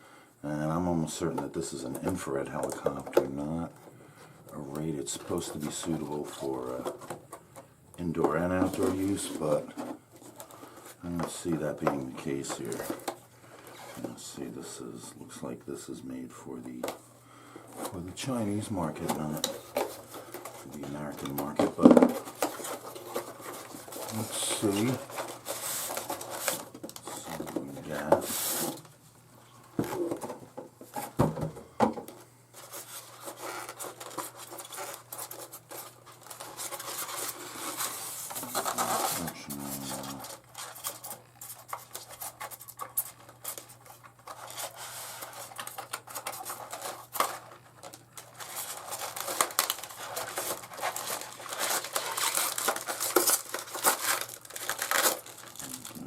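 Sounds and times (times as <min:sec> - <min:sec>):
packaging rustling and tearing: 0:08.1 - 0:14.2, 0:17.7 - 0:29.0, 0:32.5 - 0:56.0.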